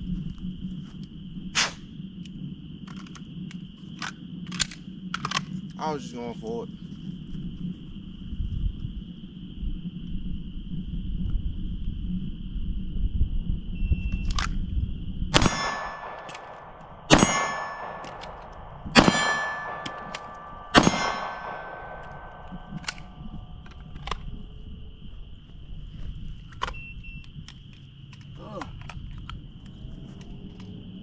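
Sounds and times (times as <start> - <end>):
pistol shots: 15.3 - 24.2
steel target ringing: 15.4 - 23.6.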